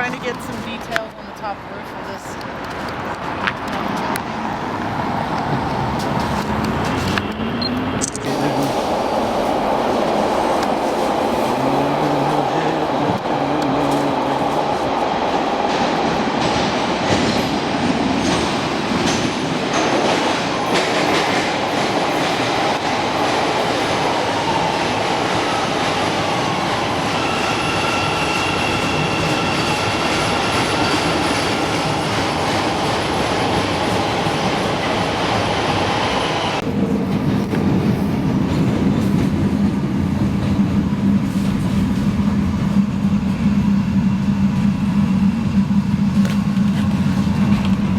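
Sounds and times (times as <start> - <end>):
train rumbling on rails: 0.0 - 47.9
wheels squealing on rails: 24.0 - 36.6.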